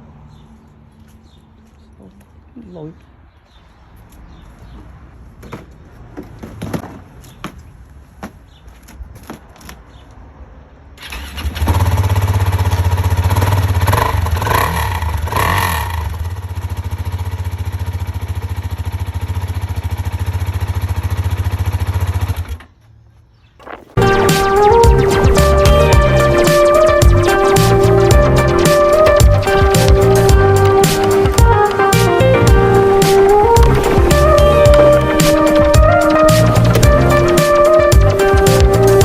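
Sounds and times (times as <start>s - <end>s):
motorcycle engine idling: 11.8s - 22.7s.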